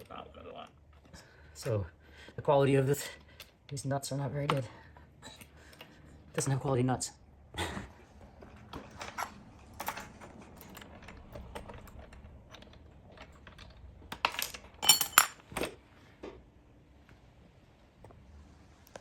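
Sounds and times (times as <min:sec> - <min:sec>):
small metal hardware clinking: 0:09.2 - 0:15.7.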